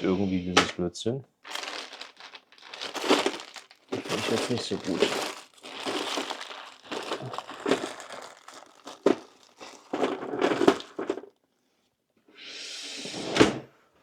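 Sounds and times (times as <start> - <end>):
plastic packaging crinkling: 1.4 - 11.3.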